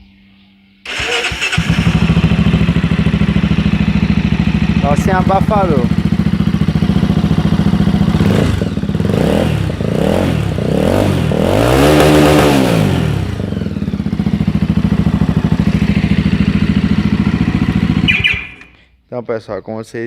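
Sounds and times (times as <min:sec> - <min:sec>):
motorcycle engine revving: 0:00.9 - 0:18.8.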